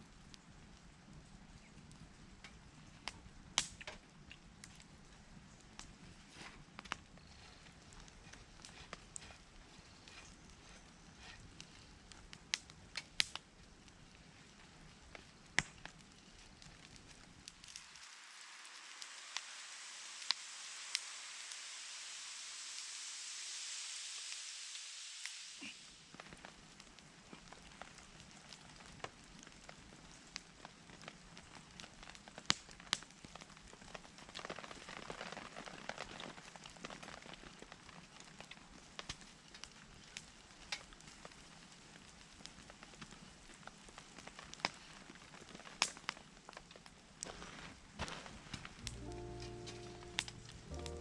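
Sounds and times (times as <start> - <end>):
wood fire crackling: 0.0 - 51.0
sharp pops of fire: 1.9 - 5.0, 5.6 - 14.2, 15.0 - 18.1, 25.2 - 51.0.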